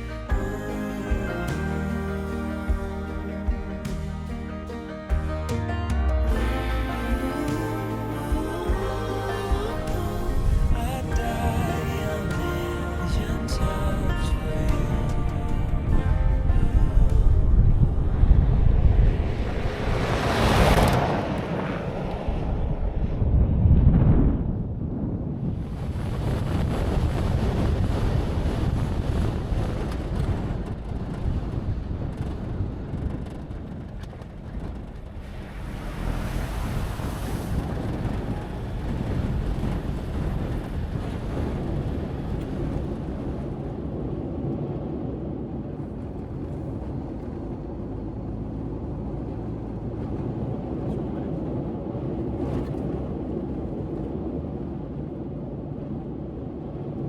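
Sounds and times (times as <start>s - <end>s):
wind buffeting microphone: 0.0s - 57.0s
vehicle driving on gravel: 26.2s - 44.1s.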